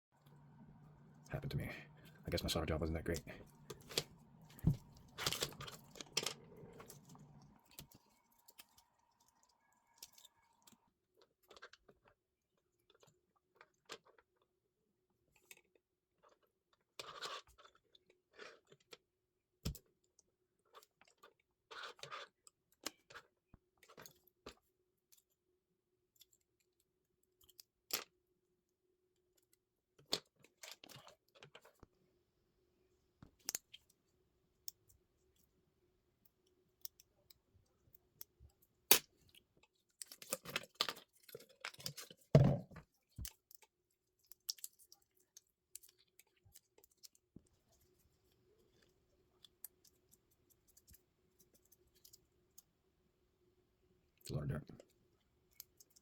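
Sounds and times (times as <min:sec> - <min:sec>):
faint steady hum: 0:00.2 - 0:10.6.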